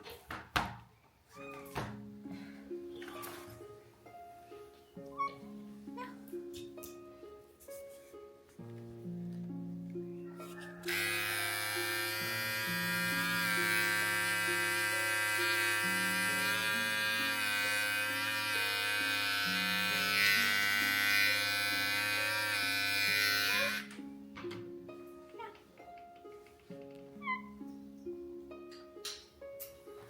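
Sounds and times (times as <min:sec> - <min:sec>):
plucked background music: 0:01.3 - 0:30.0
electric hair clippers buzzing: 0:10.8 - 0:23.9.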